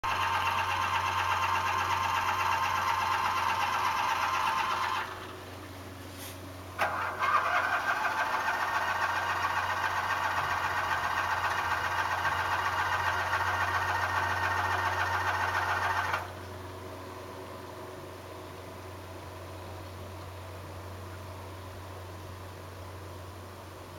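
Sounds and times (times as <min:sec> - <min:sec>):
engine starter cranking: 0:00.1 - 0:05.3, 0:06.8 - 0:16.3.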